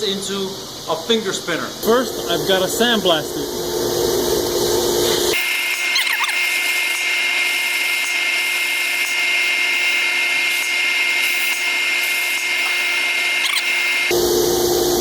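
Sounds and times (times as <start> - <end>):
sandblaster grit hiss: 4.6 - 14.1.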